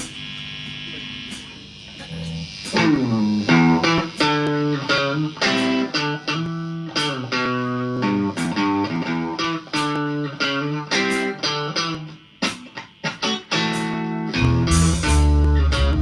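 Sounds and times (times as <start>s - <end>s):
electric guitar chords: 0.0s - 16.0s
bass guitar: 2.0s - 10.8s, 13.6s - 16.0s.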